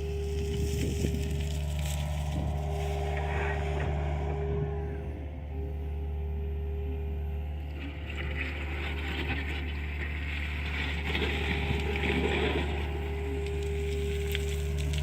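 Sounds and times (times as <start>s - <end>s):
rough working noise: 0.0s - 15.0s.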